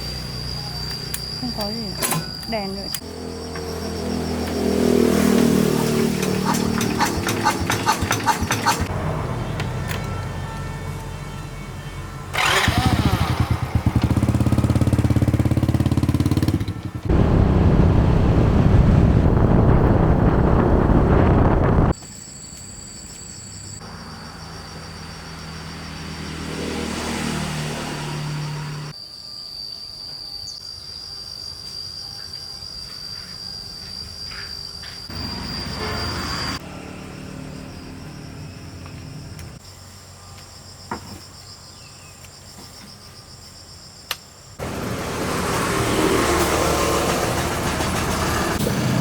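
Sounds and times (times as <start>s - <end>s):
truck engine running: 12.3s - 21.9s, 44.6s - 49.0s
hum with high whine: 17.1s - 22.0s.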